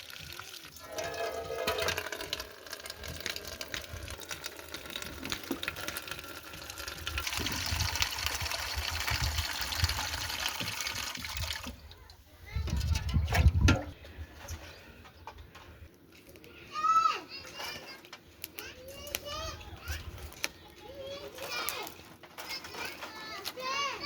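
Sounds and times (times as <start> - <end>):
water pouring into container: 0.0 - 11.9.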